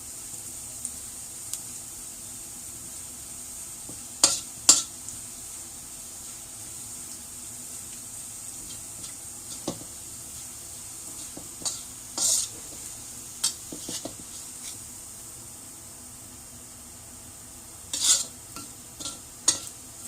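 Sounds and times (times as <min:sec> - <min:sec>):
garlic sizzling in oil: 0:00.0 - 0:20.0
utensil scraping a pan: 0:11.1 - 0:14.8, 0:17.9 - 0:19.7.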